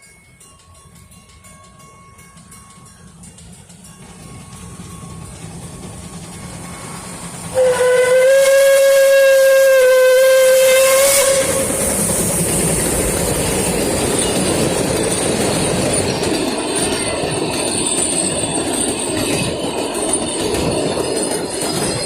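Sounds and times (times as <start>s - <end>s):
steam train hissing and running: 0.0s - 22.0s
steam locomotive whistle: 7.0s - 12.5s.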